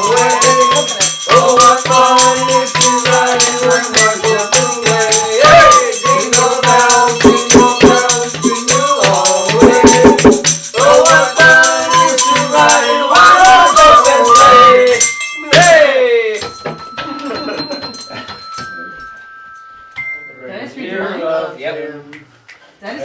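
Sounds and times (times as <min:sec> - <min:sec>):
person singing: 0:00.0 - 0:16.5
shaken hand percussion: 0:00.0 - 0:20.4
wavering melody: 0:00.0 - 0:21.5.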